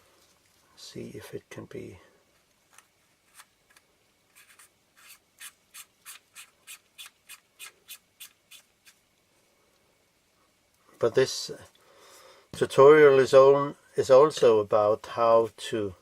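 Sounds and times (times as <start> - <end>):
threaded lens part scraping: 2.7 - 9.0.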